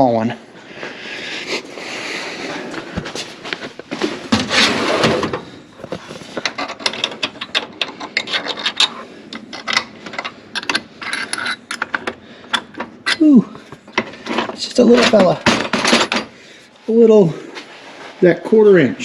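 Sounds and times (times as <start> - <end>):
tools scraping and rattling: 2.4 - 16.7
tools clicking and clinking: 5.8 - 16.3.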